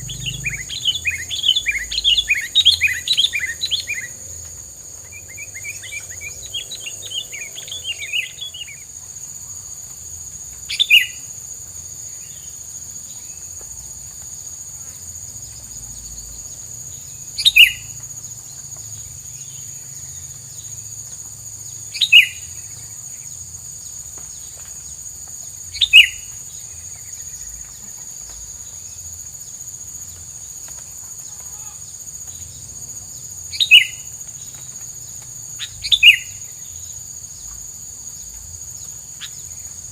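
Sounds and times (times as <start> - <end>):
bird calling: 0.0 - 8.9, 17.4 - 18.0, 25.8 - 26.4, 33.5 - 34.1, 35.6 - 36.5
high-pitched insect whine: 0.0 - 39.9.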